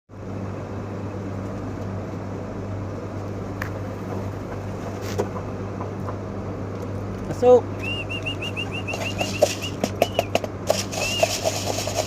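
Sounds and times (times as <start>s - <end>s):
low electrical hum: 0.1s - 12.0s.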